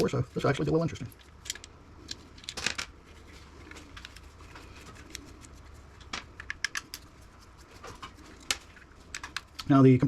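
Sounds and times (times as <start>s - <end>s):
plastic and metal parts clicking: 1.1s - 2.9s, 3.7s - 7.1s.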